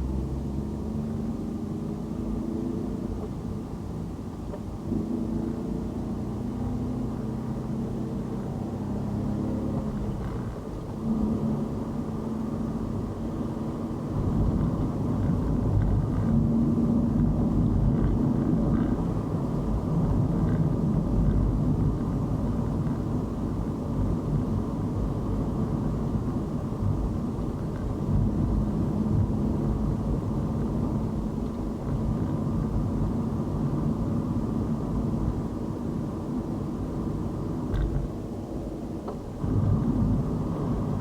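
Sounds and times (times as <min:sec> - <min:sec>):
tyre and engine rumble: 0:00.0 - 0:41.0.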